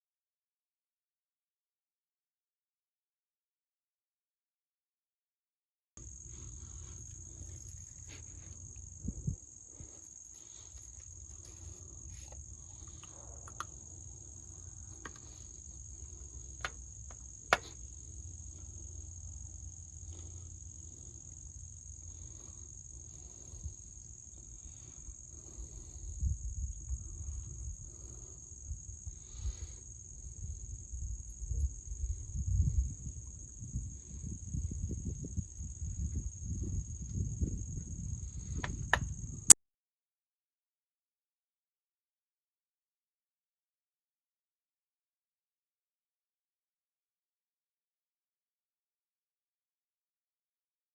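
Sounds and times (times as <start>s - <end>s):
high-pitched insect chorus: 6.0s - 39.6s.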